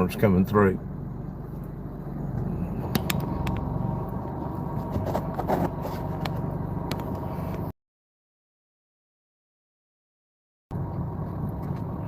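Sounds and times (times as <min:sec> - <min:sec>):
car interior hum: 0:00.0 - 0:07.7, 0:10.7 - 0:12.0.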